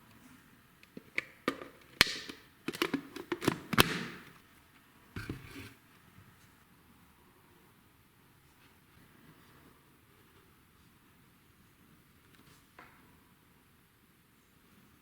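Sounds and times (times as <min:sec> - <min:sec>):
plastic clicks and snaps: 0:00.8 - 0:04.4.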